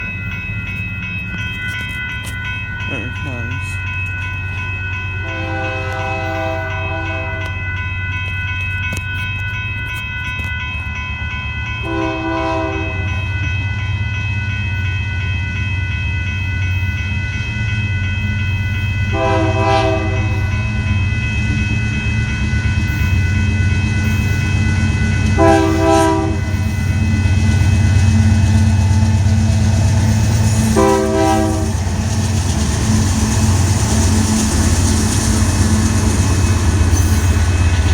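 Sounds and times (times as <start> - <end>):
locomotive air horn blasts: 5.2 - 7.6, 11.8 - 13.1, 19.1 - 20.4, 25.4 - 26.6, 30.7 - 31.8
diesel locomotive rumble: 18.1 - 37.9.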